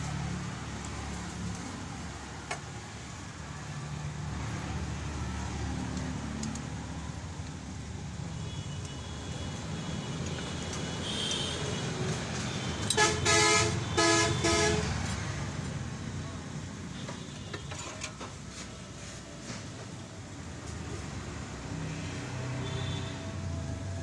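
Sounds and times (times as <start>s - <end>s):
vehicle horn blasts: 12.9s - 14.9s, 22.6s - 23.2s.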